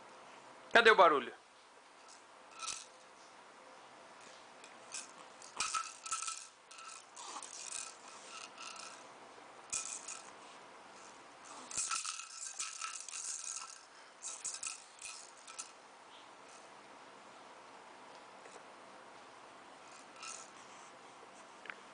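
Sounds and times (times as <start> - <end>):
toy rattle shaking: 2.0 - 3.0, 4.9 - 9.0, 9.7 - 10.3, 11.4 - 15.8, 19.9 - 20.5.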